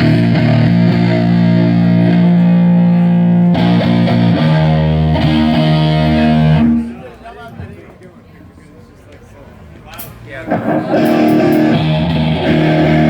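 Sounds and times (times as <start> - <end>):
distorted electric guitar chords: 0.0 - 7.0, 10.5 - 13.0.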